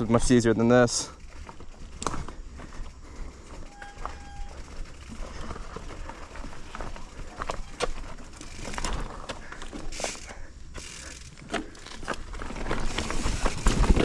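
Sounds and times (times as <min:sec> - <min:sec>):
crunching scraping and clicking: 0:01.0 - 0:14.0.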